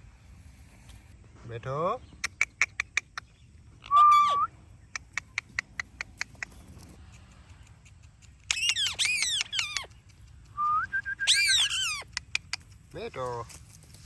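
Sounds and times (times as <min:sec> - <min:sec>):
parrot clicking chirps: 0:02.2 - 0:13.0
parrot squawking calls: 0:03.8 - 0:04.5, 0:08.5 - 0:10.0, 0:11.2 - 0:12.2.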